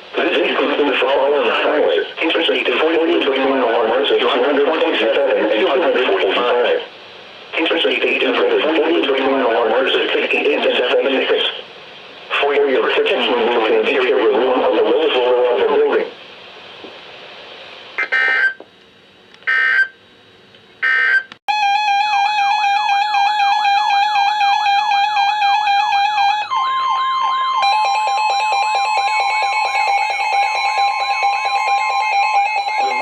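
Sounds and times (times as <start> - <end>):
digital data tone bursts: 18.0 - 18.6, 19.5 - 20.0, 20.8 - 33.0
fast high wobble: 18.0 - 18.6
steady alarm tone: 18.0 - 18.6, 19.4 - 20.0, 20.8 - 33.0
warbling electronic alarm: 18.0 - 18.6, 19.4 - 20.0, 20.8 - 33.0.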